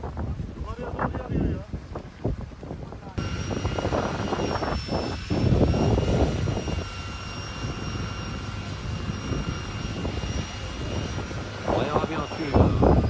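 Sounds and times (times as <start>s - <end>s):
engine drone with high whine: 3.2s - 13.0s.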